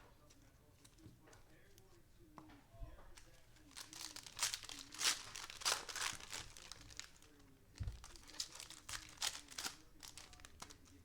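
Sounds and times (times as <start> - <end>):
wrappers tearing and crinkling: 3.2 - 11.0.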